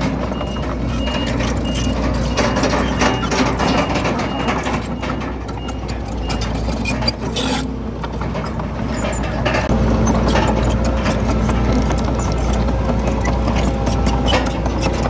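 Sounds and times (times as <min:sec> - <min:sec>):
diesel engine under load: 0:00.0 - 0:15.0
steel tracks clanking over rock: 0:00.0 - 0:15.0.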